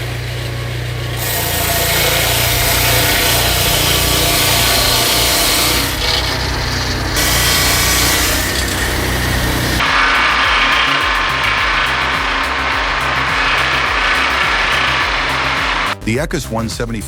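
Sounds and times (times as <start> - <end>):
saw blade cutting timber: 0.0 - 16.0
sawmill engine hum: 0.0 - 16.0.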